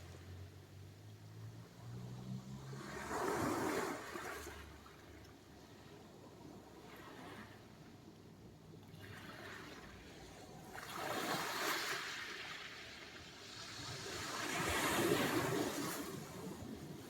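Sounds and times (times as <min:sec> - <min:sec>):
waves breaking: 0:02.7 - 0:04.9, 0:08.9 - 0:17.0.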